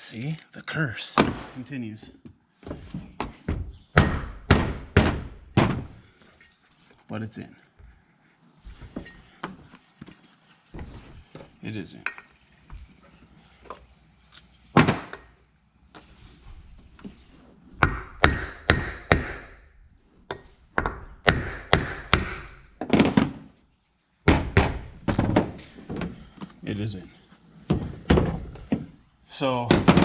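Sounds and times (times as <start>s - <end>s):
knocks and thuds on cart wheel: 2.8s - 6.0s, 20.8s - 23.5s, 27.7s - 28.9s, 29.7s - 30.0s.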